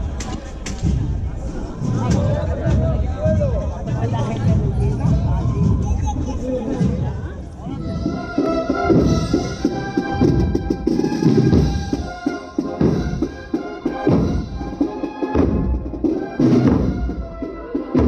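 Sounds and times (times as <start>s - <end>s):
procession band playing: 7.7s - 18.0s
drum beat: 7.8s - 18.0s.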